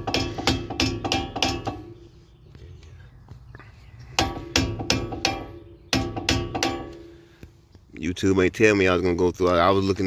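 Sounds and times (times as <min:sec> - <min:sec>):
hammer striking metal: 0:00.0 - 0:02.0, 0:04.2 - 0:07.2.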